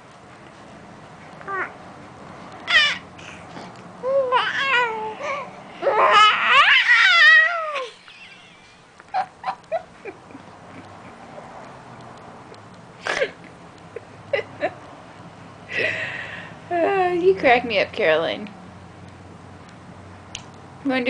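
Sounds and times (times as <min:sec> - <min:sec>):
baby short squeaks: 0:02.6 - 0:03.4
baby squealing: 0:02.6 - 0:03.4, 0:04.0 - 0:08.8
baby mouth clicks: 0:19.0 - 0:20.6.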